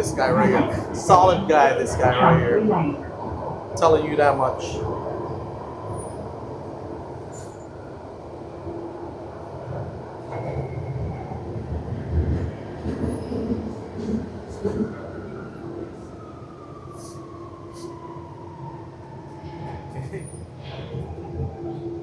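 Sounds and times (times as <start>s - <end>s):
underground train rumbling: 0.0s - 22.0s.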